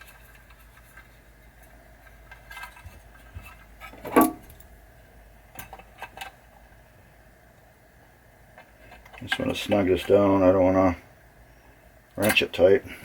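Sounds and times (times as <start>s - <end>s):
small parts clicking and rattling: 0.0s - 4.7s.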